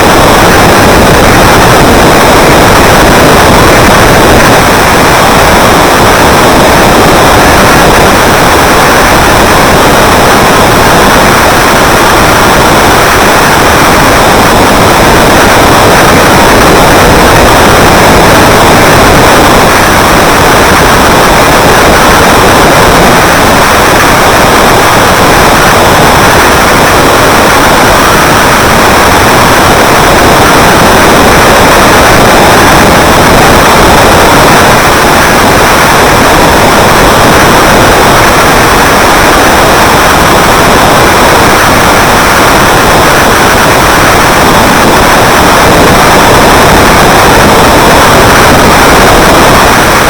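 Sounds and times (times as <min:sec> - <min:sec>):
loud distorted noise: 0:00.0 - 0:50.0
loud harsh static noise: 0:00.0 - 0:50.0.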